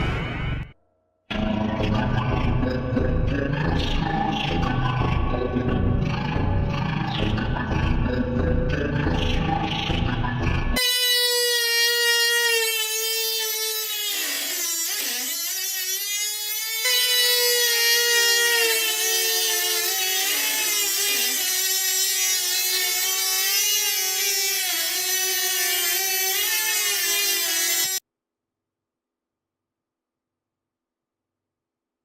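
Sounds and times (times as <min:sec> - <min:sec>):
small electric motor whining: 0:10.8 - 0:28.0.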